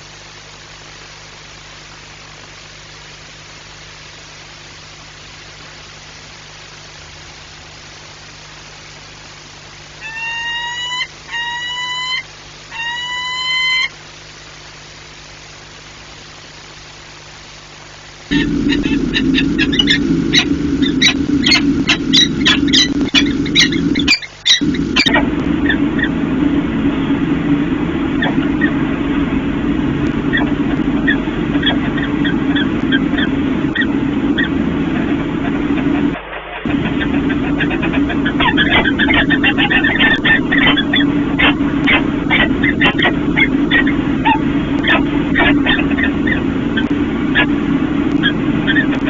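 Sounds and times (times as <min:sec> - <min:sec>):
low machinery drone: 0:00.0 - 0:09.9, 0:17.6 - 0:49.0
steady low hum: 0:00.0 - 0:49.0
falcon wailing calls: 0:10.0 - 0:14.0, 0:18.3 - 0:26.2, 0:36.7 - 0:47.6.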